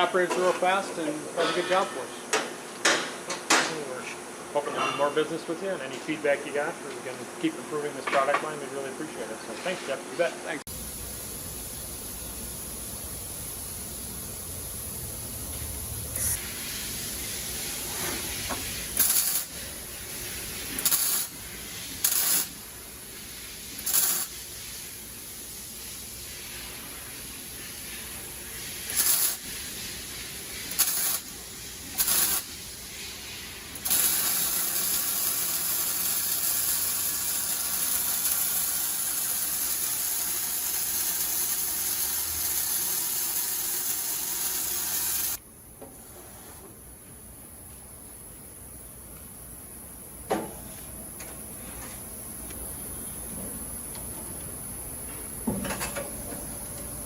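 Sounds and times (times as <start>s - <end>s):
welding stand hissing: 10.7s - 45.4s.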